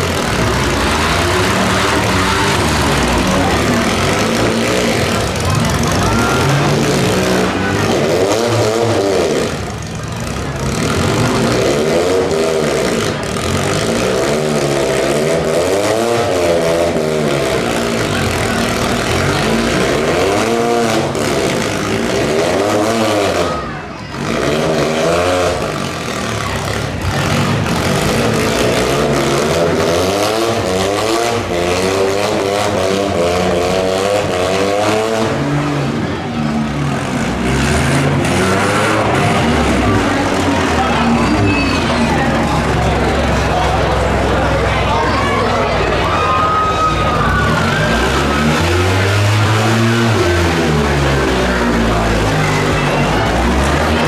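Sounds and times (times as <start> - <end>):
car engines revving: 0.0 - 54.0.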